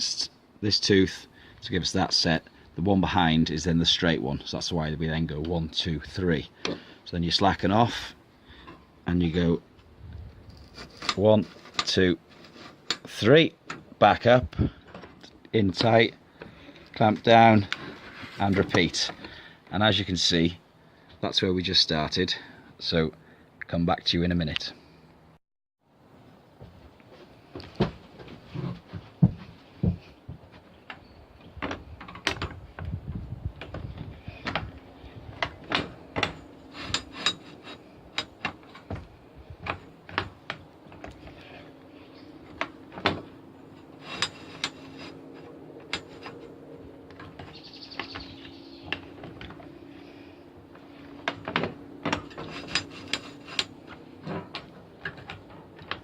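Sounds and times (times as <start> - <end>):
faint steady hum: 0.0 - 56.0
metal tool clicks and clunks: 35.4 - 41.5, 42.5 - 46.5, 50.7 - 56.0.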